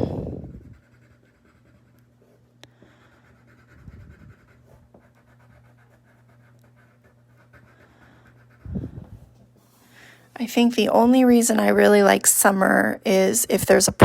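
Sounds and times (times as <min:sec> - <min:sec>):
pencil scratching on paper: 0:00.0 - 0:09.4
low steady hum: 0:00.0 - 0:14.0.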